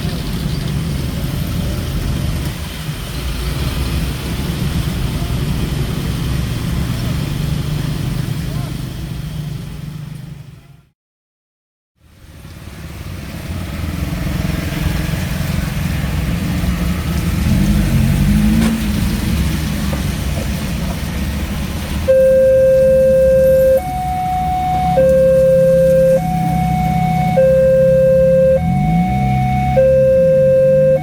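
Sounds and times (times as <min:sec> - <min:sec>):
road traffic rumbling: 0:00.0 - 0:10.9, 0:12.0 - 0:31.0
level crossing warning siren: 0:16.0 - 0:17.9, 0:22.0 - 0:31.0.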